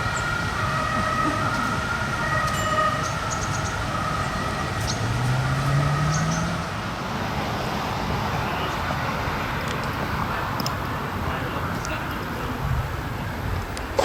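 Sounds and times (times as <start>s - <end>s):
two-tone siren: 0.0s - 6.6s
traffic noise: 0.0s - 14.0s
engine revving: 4.6s - 7.0s.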